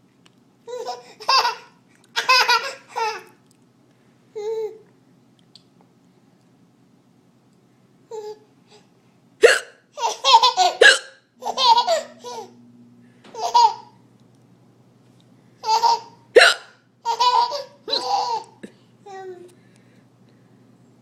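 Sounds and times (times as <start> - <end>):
man hiccuping: 9.4 - 9.8, 10.8 - 11.2, 16.4 - 16.8
child giggling: 17.1 - 18.7.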